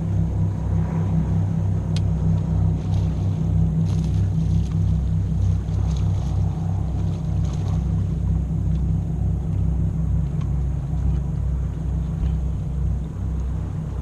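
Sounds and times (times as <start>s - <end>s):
boat engine throbbing: 0.0s - 14.0s.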